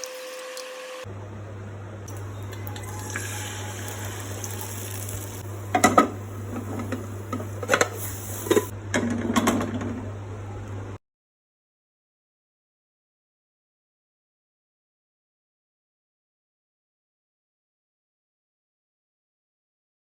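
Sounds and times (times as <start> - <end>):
steady low hum: 1.1 - 11.0.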